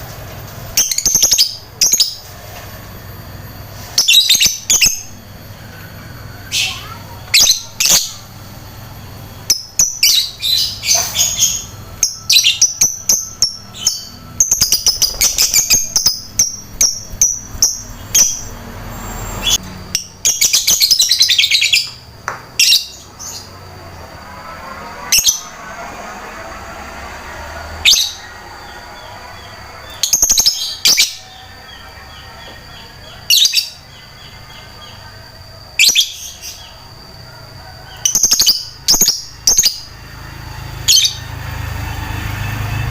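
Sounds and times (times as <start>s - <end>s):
lovebird chirping: 3.8s - 24.0s, 27.4s - 36.9s.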